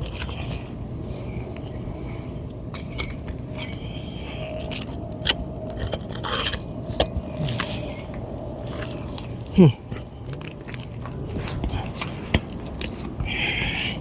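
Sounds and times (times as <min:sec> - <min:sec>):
metal tool scraping and clinking: 0:00.0 - 0:01.3, 0:02.5 - 0:03.9, 0:04.6 - 0:07.7.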